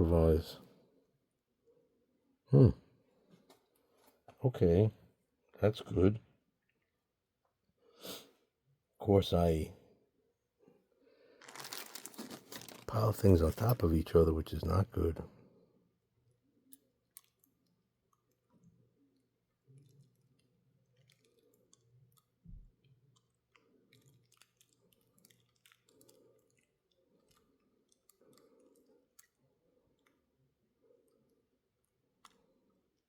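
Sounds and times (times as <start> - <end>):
small parts clicking and tapping: 11.4 - 13.8, 16.6 - 18.8, 19.5 - 33.0.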